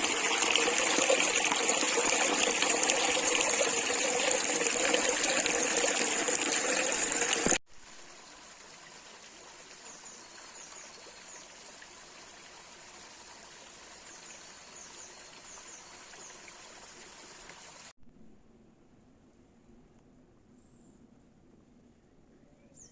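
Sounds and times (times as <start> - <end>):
stream running water: 0.0 - 17.9.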